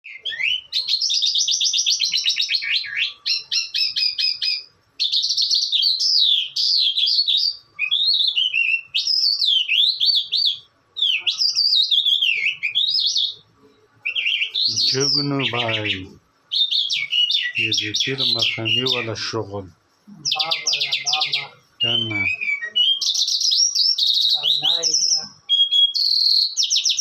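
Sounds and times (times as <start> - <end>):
songbird singing: 0.0 - 27.0.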